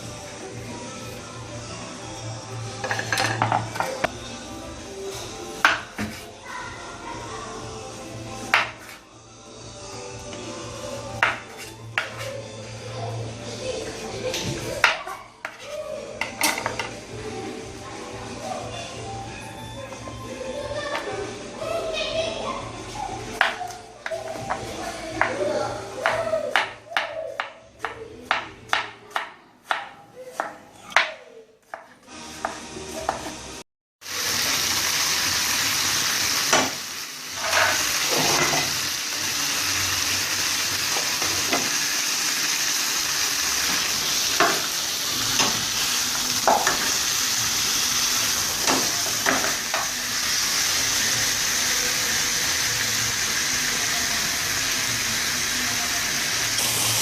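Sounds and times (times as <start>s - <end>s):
utensil scraping a pan: 11.2s - 12.4s, 37.3s - 38.8s
food sizzling in oil: 32.1s - 57.0s.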